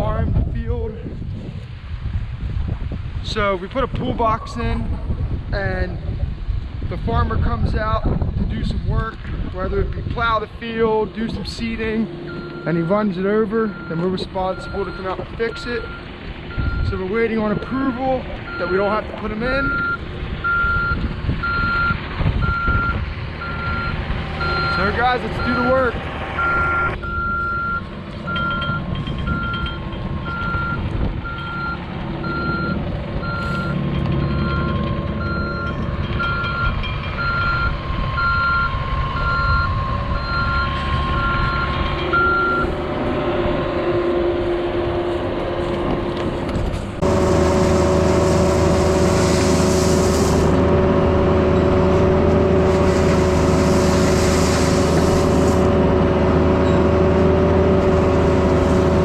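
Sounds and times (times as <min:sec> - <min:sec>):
diesel engine running: 0:00.0 - 0:59.0
loud steady engine sound: 0:00.0 - 0:59.0
backup alarm beeping: 0:11.5 - 0:25.8, 0:26.4 - 0:42.8.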